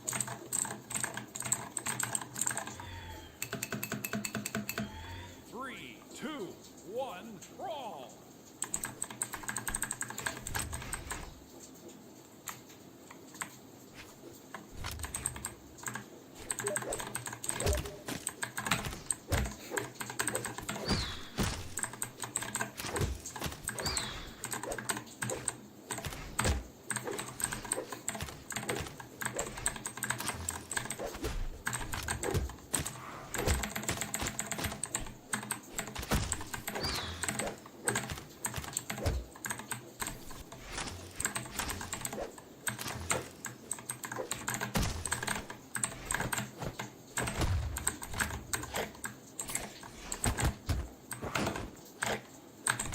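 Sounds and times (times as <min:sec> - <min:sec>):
clicky mechanical keyboard typing: 0:00.0 - 0:05.2, 0:08.5 - 0:11.7, 0:12.4 - 0:52.9.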